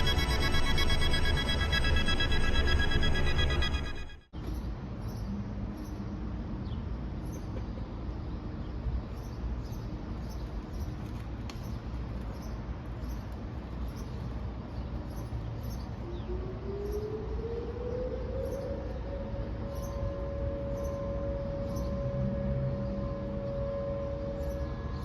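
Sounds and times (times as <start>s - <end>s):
distant warning sirens: 0.0s - 4.3s, 15.8s - 25.0s
steady outdoor noise: 0.0s - 25.0s.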